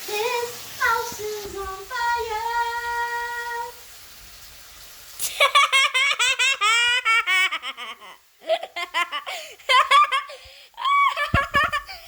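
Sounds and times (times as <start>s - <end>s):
high-pitched laughter: 5.2s - 12.0s.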